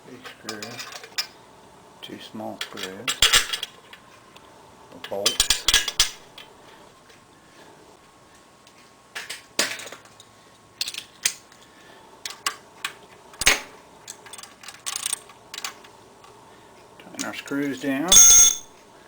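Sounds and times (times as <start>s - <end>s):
metal clicks of tools and screws: 13.4s - 15.8s.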